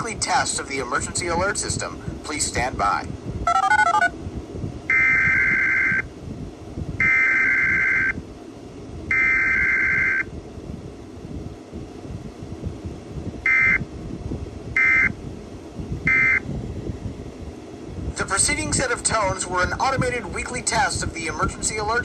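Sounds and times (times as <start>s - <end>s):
warbling data tone bursts: 3.5s - 4.1s, 4.9s - 6.1s, 7.0s - 8.2s, 9.1s - 10.3s.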